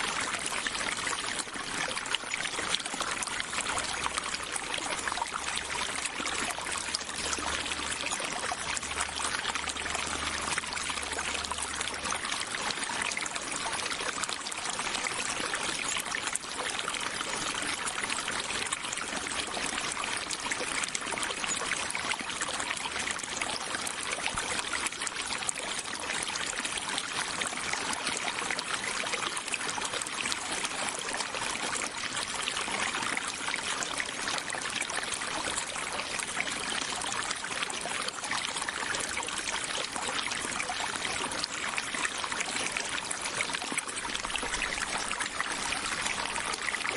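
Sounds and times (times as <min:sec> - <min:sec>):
stream of water flowing: 0:00.0 - 0:46.9.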